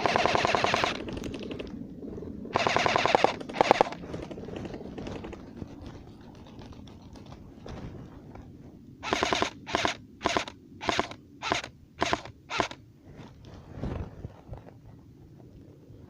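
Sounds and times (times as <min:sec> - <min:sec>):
airsoft gun firing bursts: 0:00.0 - 0:01.6, 0:02.6 - 0:05.4, 0:09.0 - 0:12.8.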